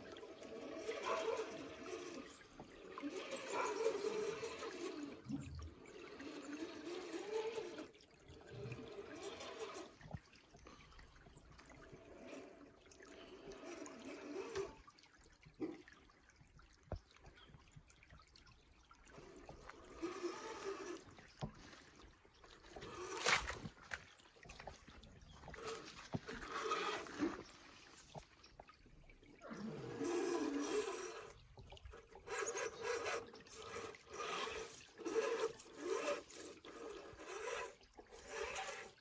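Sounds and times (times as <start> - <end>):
electric motor and gears whining: 0.0 - 10.2, 11.7 - 14.8, 19.2 - 24.0, 25.4 - 27.6, 29.4 - 39.0
water trickling and splashing: 0.0 - 39.0.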